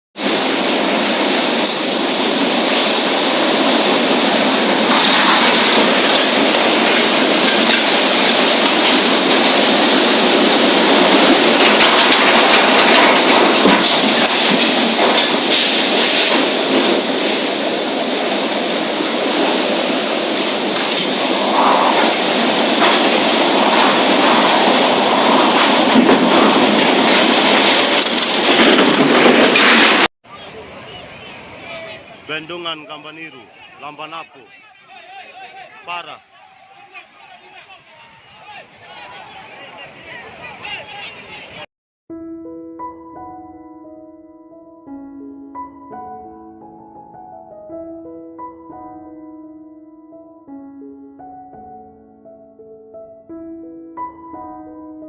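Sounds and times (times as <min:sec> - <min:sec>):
storm rushing noise: 0:00.2 - 0:34.5
sharp cracks: 0:20.8 - 0:30.1.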